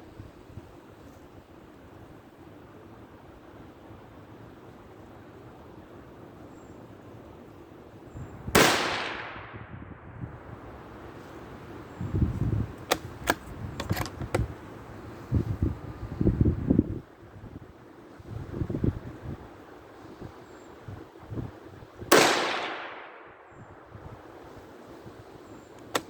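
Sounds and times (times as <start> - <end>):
wind buffeting microphone: 8.1 - 26.0
rifle shot: 8.5 - 9.7, 22.1 - 23.5
sharp clicks: 12.8 - 14.5, 25.7 - 26.0.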